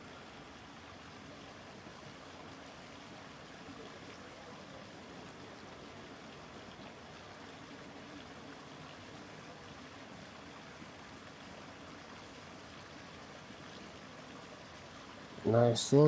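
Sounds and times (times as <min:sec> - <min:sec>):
faint steady hiss: 0:00.0 - 0:16.0.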